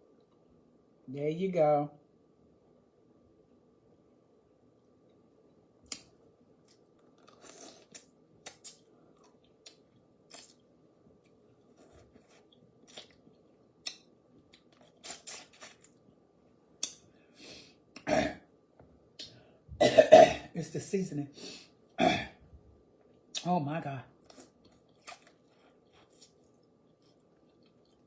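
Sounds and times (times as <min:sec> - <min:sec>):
chewing: 0:06.7 - 0:10.6, 0:11.7 - 0:16.0, 0:24.3 - 0:28.0.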